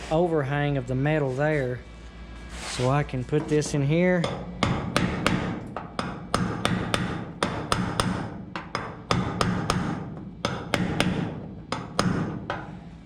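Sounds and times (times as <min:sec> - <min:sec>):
low hum: 0:00.0 - 0:09.4
hammer tapping sheet steel: 0:03.3 - 0:12.9.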